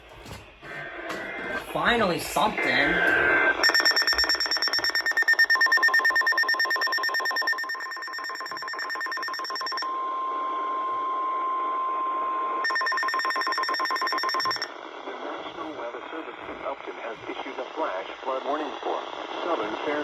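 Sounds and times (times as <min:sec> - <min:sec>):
steady alarm tone: 0:01.4 - 0:10.4, 0:12.6 - 0:14.7
rapid electronic alarm beeping: 0:02.6 - 0:09.9, 0:12.6 - 0:14.7.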